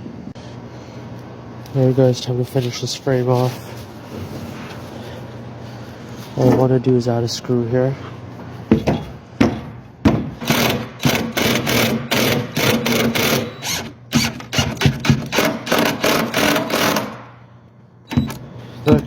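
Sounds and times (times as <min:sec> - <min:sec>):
power drill driving a screw: 0:10.4 - 0:17.2.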